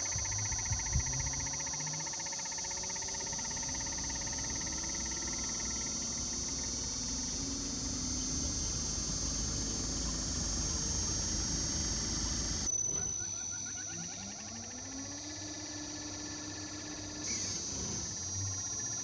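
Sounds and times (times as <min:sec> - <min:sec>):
compressor hum: 0:00.0 - 0:13.1
high-pitched electronic whine: 0:00.0 - 0:19.0.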